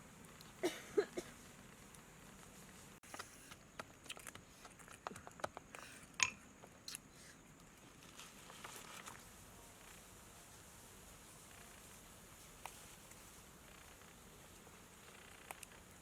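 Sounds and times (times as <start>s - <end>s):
chewing food: 3.0s - 7.8s.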